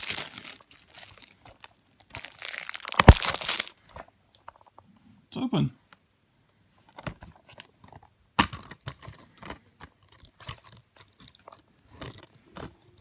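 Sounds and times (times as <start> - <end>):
plastic packaging crinkling: 0.0 - 4.4.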